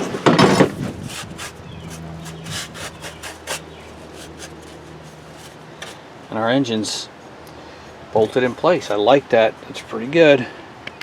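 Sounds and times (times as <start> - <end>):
metal scrape: 0.0 - 6.0.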